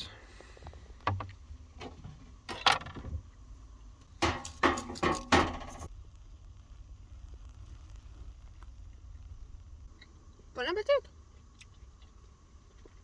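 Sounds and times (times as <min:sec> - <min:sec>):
dishes and utensils clinking: 0:04.2 - 0:05.9.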